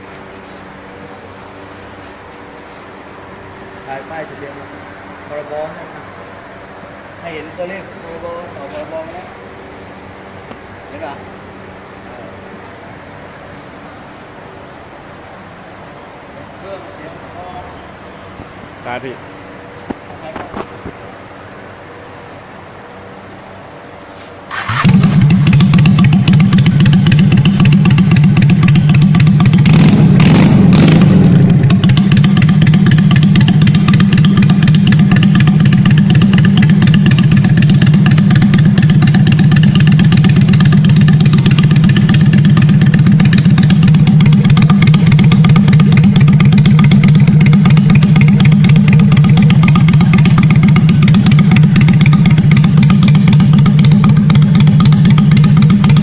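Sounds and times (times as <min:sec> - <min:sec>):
motorcycle engine idling: 0:24.5 - 0:56.0.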